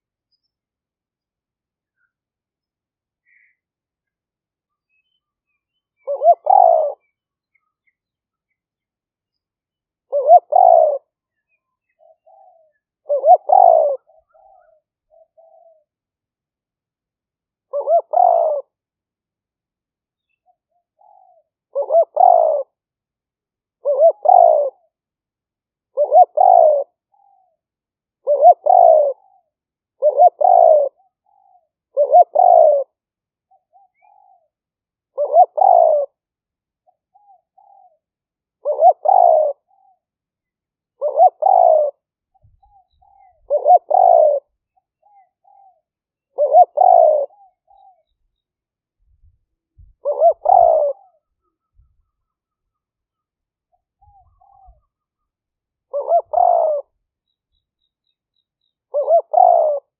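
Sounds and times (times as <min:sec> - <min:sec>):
dove cooing: 0:06.0 - 0:07.2, 0:10.1 - 0:11.2, 0:11.9 - 0:15.9, 0:17.7 - 0:18.8, 0:20.4 - 0:22.8, 0:23.8 - 0:24.9, 0:25.9 - 0:27.6, 0:28.2 - 0:36.2, 0:36.8 - 0:40.0, 0:41.0 - 0:48.1, 0:49.8 - 0:52.8, 0:54.0 - 0:55.2, 0:55.9 - 0:57.0, 0:58.9 - 0:59.9.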